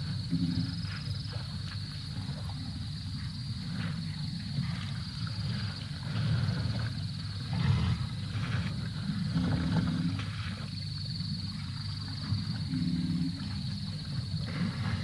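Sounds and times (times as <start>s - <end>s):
elephants rumbling: 3.7s - 10.6s.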